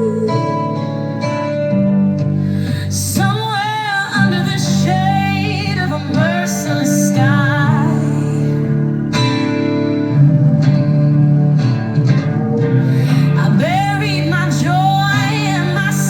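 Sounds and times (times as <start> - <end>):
vibrato singing voice: 0.0 - 1.4, 2.5 - 16.0
guitar and bass backing: 0.0 - 16.0.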